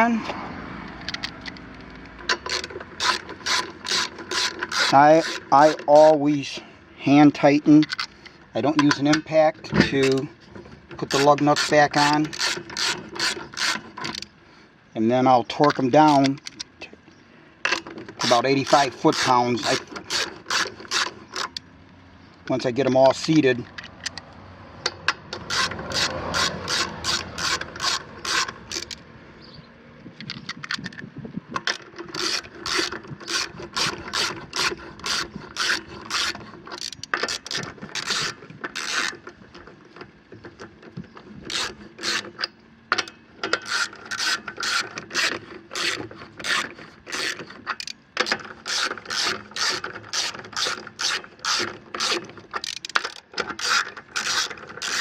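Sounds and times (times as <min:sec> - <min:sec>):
hand ratchet wrench clicking: 0:02.3 - 0:06.2, 0:11.0 - 0:14.3, 0:17.7 - 0:21.6, 0:25.1 - 0:29.0, 0:31.6 - 0:39.3, 0:41.4 - 0:55.0.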